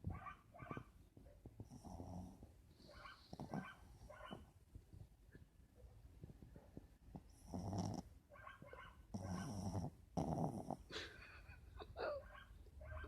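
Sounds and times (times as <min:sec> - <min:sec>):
loud snoring: 0:07.4 - 0:08.0, 0:09.2 - 0:10.8.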